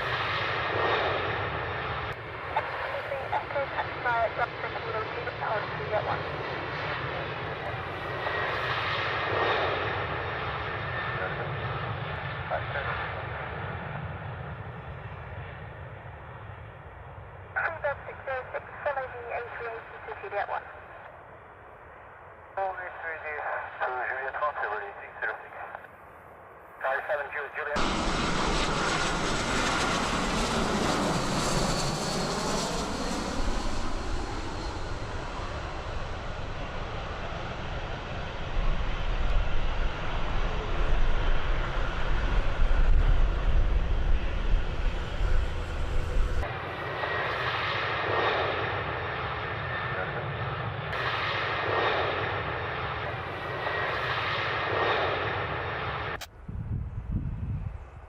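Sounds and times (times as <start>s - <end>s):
aircraft engines roaring: 0.0s - 58.0s.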